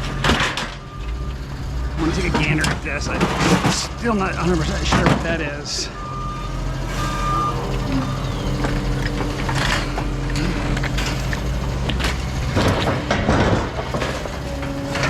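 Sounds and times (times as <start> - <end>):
vehicle engine running: 0.0 - 15.0
scrap metal clatter: 6.9 - 15.0.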